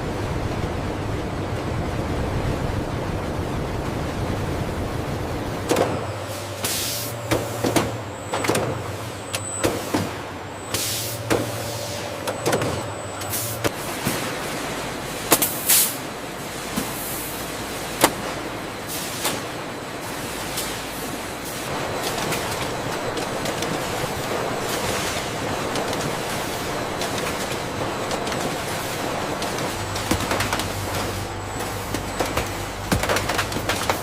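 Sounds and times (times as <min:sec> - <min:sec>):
machinery low hum: 0:00.0 - 0:34.0
machinery knocks and clatter: 0:05.6 - 0:15.7, 0:21.7 - 0:34.0.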